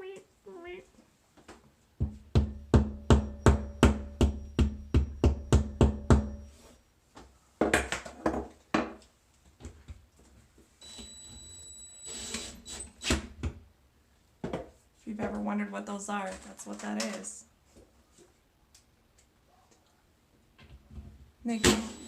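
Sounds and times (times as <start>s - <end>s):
hammer strikes on anchor: 2.4s - 6.4s.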